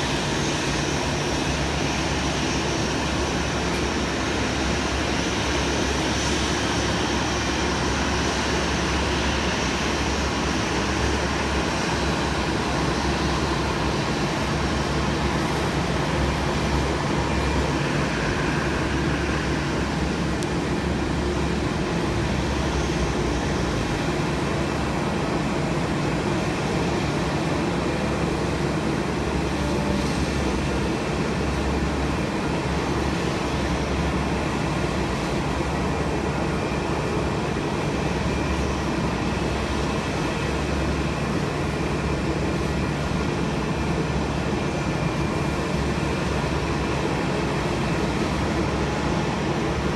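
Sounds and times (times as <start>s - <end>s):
jet engines running: 0.0s - 49.9s.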